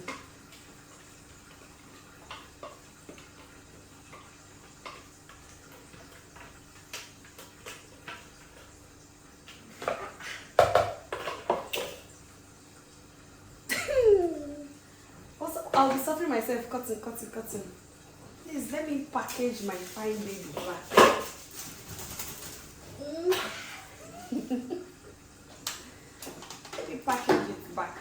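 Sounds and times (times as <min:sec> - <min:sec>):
cookware clinking and clattering: 0:09.8 - 0:12.1, 0:20.4 - 0:21.4.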